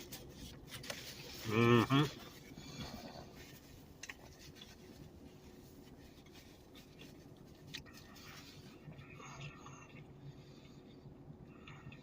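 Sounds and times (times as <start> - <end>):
close-up chewing: 0.0 - 12.0.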